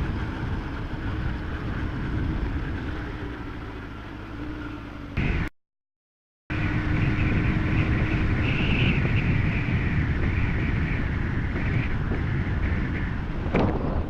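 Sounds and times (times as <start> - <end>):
wind on microphone: 0.0 - 3.7, 6.5 - 14.0
motorcycle engine rumble: 0.0 - 5.5, 6.5 - 14.0.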